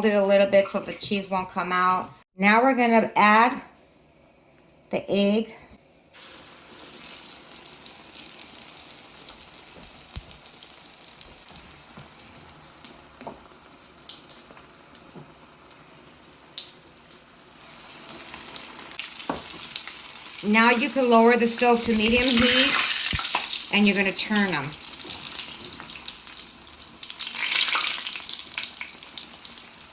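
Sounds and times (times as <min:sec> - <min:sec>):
food sizzling in hot oil: 0:06.1 - 0:29.9
oil crackling and popping: 0:06.2 - 0:20.5, 0:21.5 - 0:23.8, 0:24.8 - 0:29.9.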